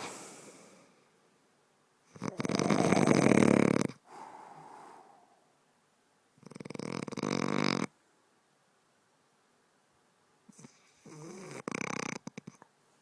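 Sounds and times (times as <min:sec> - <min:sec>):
soft breath out: 0:00.0 - 0:01.0, 0:04.0 - 0:05.6
loud rattling snores: 0:02.1 - 0:04.0, 0:06.4 - 0:07.9, 0:10.6 - 0:12.6.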